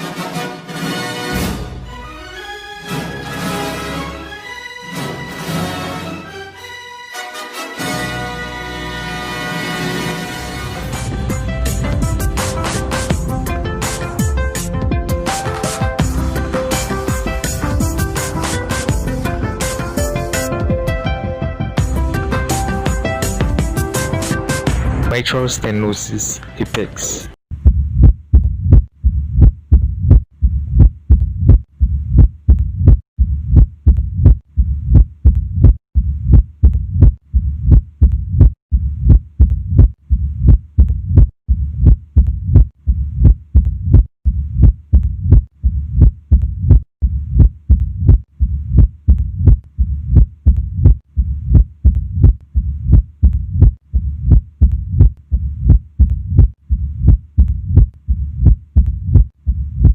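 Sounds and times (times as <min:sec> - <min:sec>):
heartbeats: 0:27.5 - 0:59.9
low heart murmur: 0:27.6 - 0:59.9.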